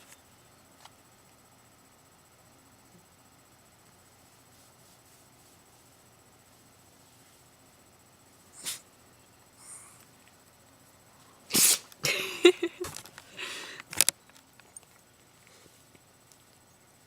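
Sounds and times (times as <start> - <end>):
dog sneezing: 8.5 - 8.9, 11.5 - 12.0.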